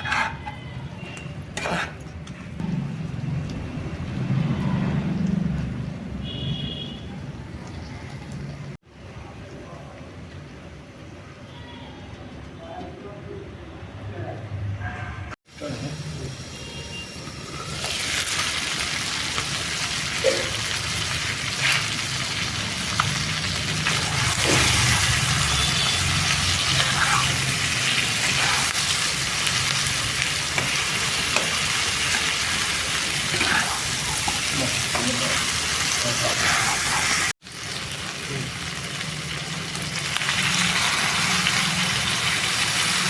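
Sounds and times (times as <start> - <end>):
chicken sizzling in a pan: 15.6 - 43.0.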